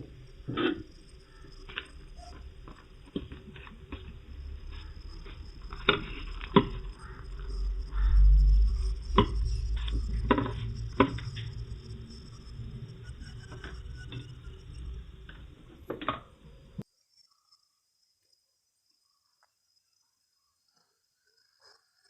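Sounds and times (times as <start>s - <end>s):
low handling rumble: 0.0s - 16.8s.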